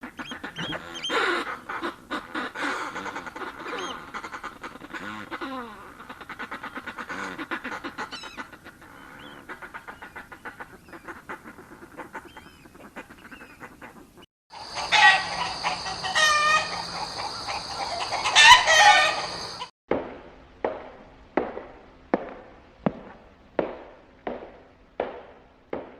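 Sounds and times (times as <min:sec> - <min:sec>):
chicken clucking: 0:00.0 - 0:19.7
seabird cackling: 0:00.0 - 0:19.7.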